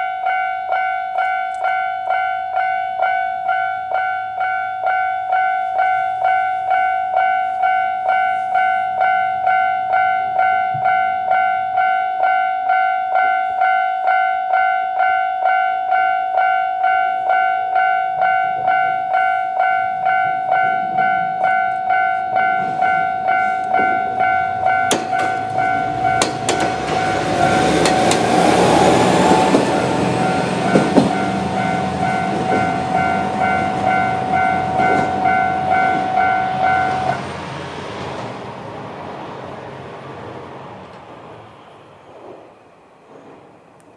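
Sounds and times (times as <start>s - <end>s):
level crossing warning bell: 0.0s - 37.4s
diesel railcar passing: 0.0s - 43.9s
wheels clacking over rail joints: 20.2s - 38.5s.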